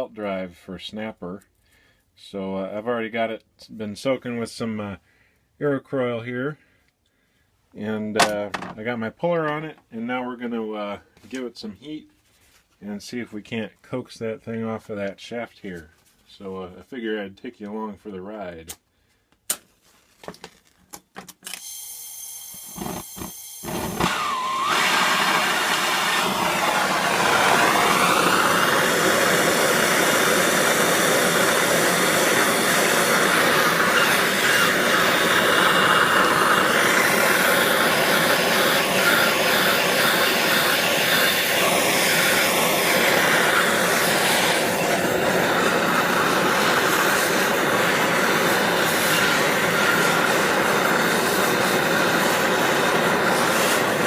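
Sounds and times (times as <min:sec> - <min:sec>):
gas torch flame hissing: 0:22.7 - 0:54.0.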